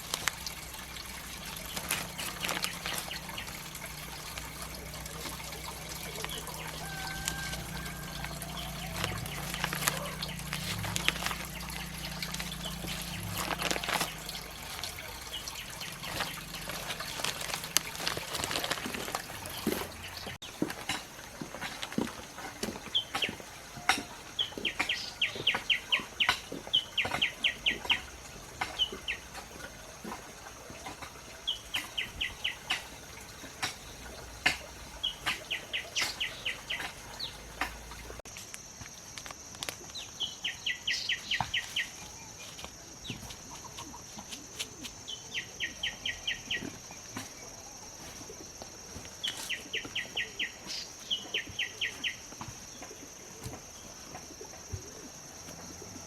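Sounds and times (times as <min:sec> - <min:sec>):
bird calling high notes: 0:01.8 - 0:16.6.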